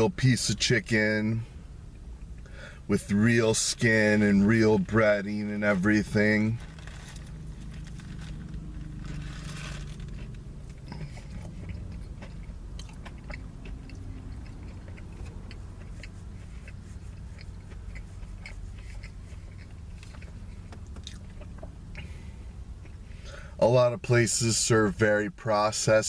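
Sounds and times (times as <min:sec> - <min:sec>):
highway traffic rumble: 0:00.0 - 0:26.0
chewing crispy fried chicken: 0:06.0 - 0:22.2.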